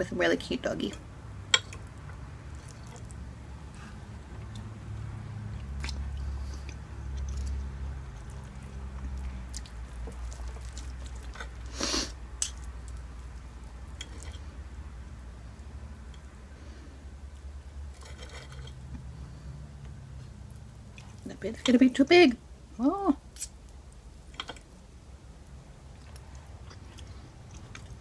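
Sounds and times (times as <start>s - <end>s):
person chewing food: 1.6s - 14.9s, 25.8s - 28.0s.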